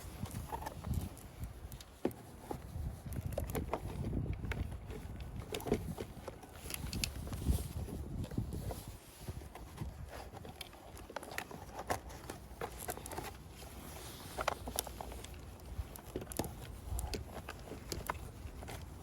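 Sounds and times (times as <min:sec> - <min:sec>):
light clicks and taps: 0:00.1 - 0:08.4.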